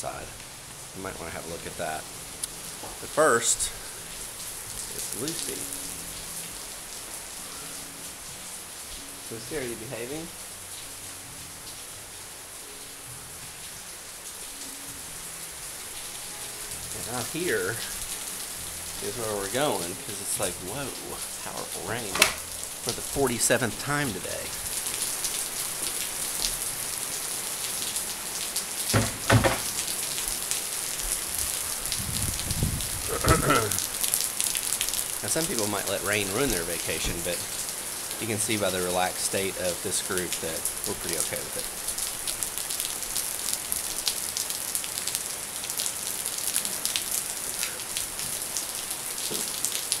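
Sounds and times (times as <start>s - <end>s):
raindrops ticking: 0.0s - 6.5s, 16.9s - 18.2s, 18.9s - 26.7s, 27.6s - 50.0s
heavy rain pouring: 0.0s - 50.0s.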